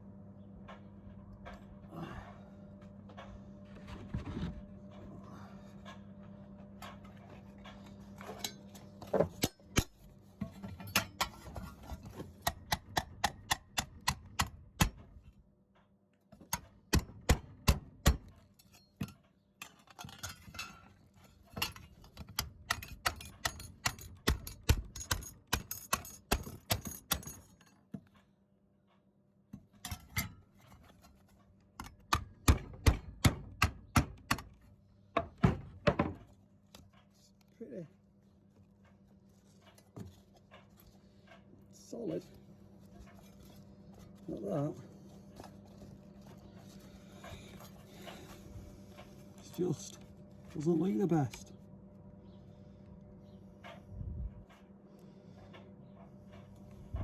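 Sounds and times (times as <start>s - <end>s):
low hum: 51.6s - 54.6s.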